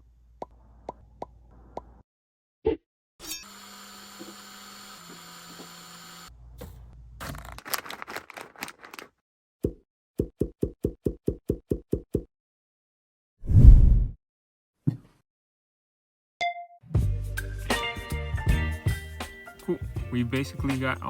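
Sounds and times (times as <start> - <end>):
keyboard parts clicking: 7.3 - 9.1.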